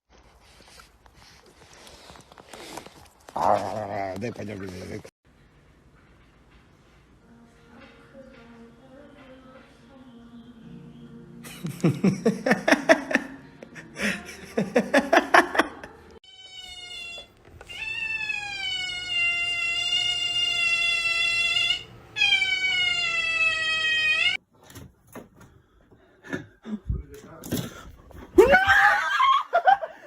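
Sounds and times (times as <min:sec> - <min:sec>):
cat yowling: 0:16.3 - 0:24.4.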